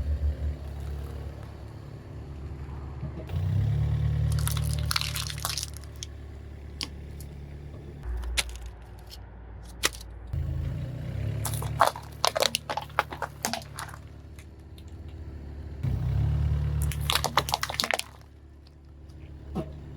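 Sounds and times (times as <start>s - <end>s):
car engine humming: 0.0s - 19.9s
tyre crushing crunchy objects: 3.4s - 6.1s, 8.0s - 10.1s, 11.2s - 15.1s, 15.9s - 18.8s.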